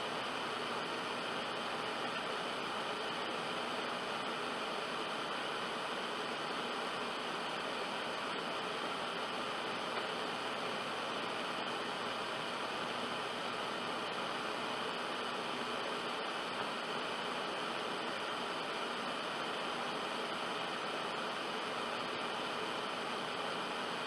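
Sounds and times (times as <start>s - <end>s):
steady static hiss: 0.0s - 24.0s.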